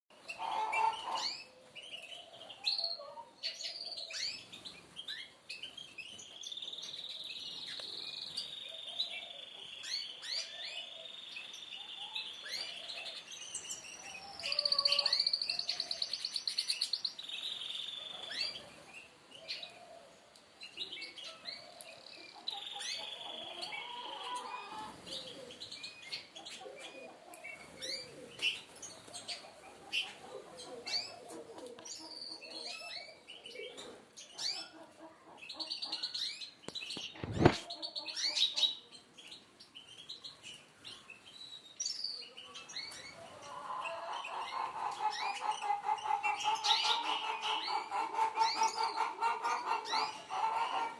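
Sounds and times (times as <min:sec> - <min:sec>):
songbirds chirping and singing: 0:00.1 - 0:50.9
doves cooing: 0:00.4 - 0:04.3, 0:19.4 - 0:20.3, 0:21.6 - 0:36.1, 0:43.1 - 0:50.9.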